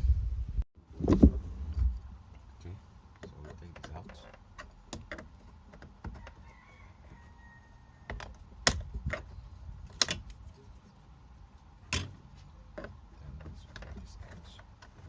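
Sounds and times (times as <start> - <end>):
tools clicking and knocking: 3.2 - 6.4.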